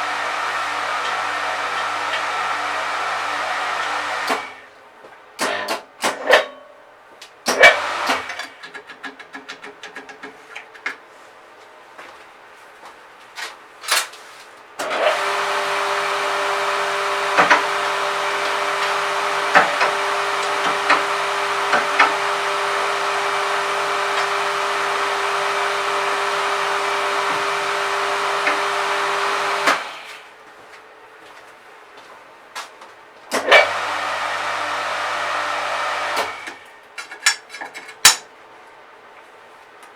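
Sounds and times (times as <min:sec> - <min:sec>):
metalworking machine motor humming: 0:00.0 - 0:04.6, 0:14.8 - 0:30.3, 0:33.4 - 0:36.6.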